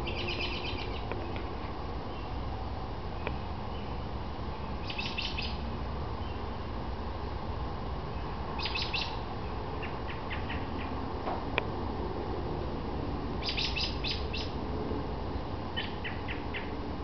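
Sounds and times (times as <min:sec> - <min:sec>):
small birds chirping: 0:00.0 - 0:02.5, 0:03.1 - 0:06.6, 0:08.2 - 0:11.0, 0:13.4 - 0:14.6, 0:15.7 - 0:16.8.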